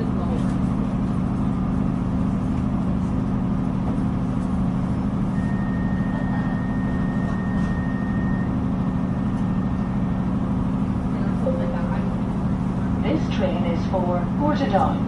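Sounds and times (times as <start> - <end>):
train diesel engine hum: 0.0 - 15.0
steady high tone: 11.4 - 12.3.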